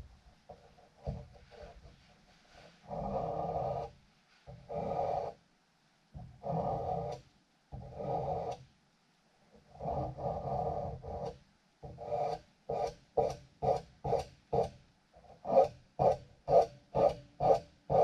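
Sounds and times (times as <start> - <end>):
hand tool rasping on metal: 9.8 - 14.7, 15.4 - 18.0.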